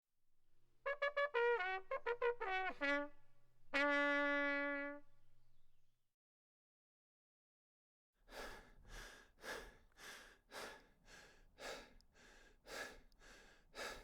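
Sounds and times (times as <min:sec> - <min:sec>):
trumpet-like brass tune: 0:00.9 - 0:05.3.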